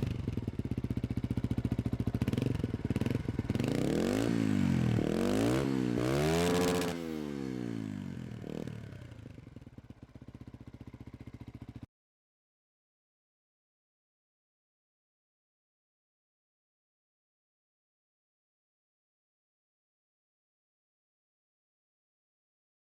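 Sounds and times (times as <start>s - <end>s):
motorcycle engine revving: 0.0s - 11.8s.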